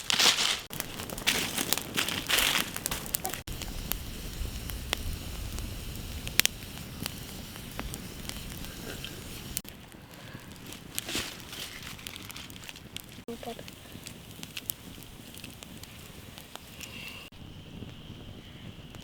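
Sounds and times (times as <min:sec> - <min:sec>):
rustling and crinkling handling: 0:00.0 - 0:03.5, 0:09.7 - 0:16.9
campfire crackling and popping: 0:00.0 - 0:19.0.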